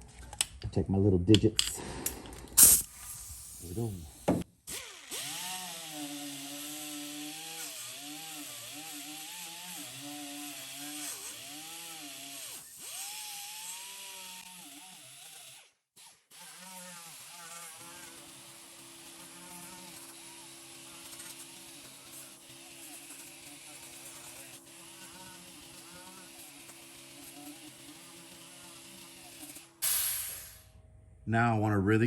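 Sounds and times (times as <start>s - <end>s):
hiss of abrasion: 1.8s - 4.4s, 29.8s - 30.7s
power grinder on sheet metal: 4.7s - 29.8s.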